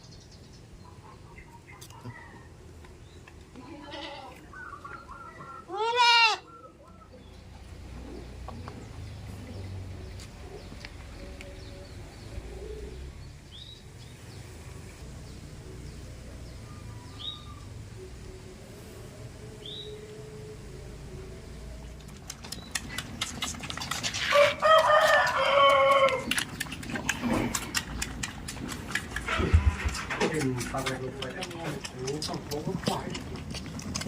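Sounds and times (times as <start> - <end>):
rooster crowing: 24.3 - 26.3.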